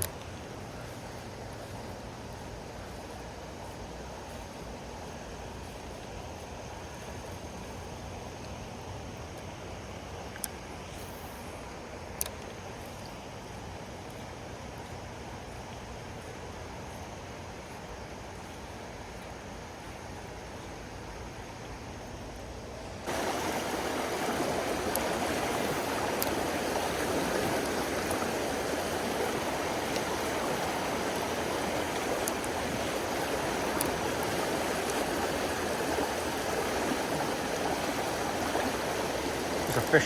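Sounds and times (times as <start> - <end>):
creek water rushing over riffles: 23.0 - 40.0.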